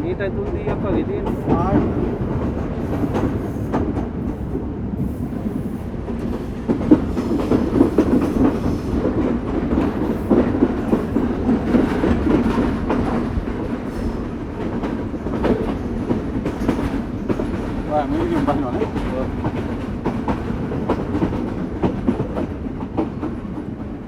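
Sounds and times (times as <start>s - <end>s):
train carriage rumble: 0.0s - 24.0s
wheels clacking over rail joints: 6.1s - 23.7s.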